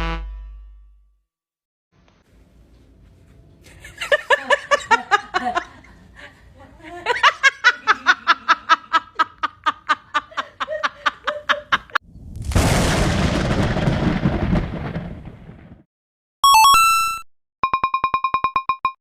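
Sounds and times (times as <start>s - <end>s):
rapid rhythmic laughter: 3.7s - 12.0s
sudden rush of noise: 12.0s - 14.4s.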